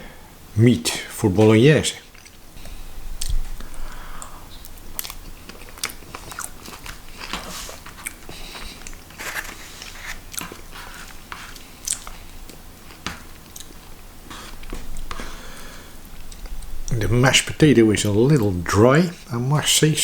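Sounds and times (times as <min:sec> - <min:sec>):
person chewing food: 0:02.0 - 0:17.0.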